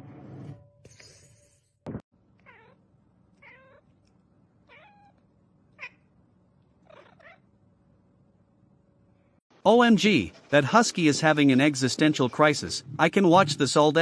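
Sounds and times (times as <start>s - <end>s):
cat meowing: 2.4s - 2.8s, 3.4s - 4.0s, 4.6s - 5.2s, 6.8s - 7.4s.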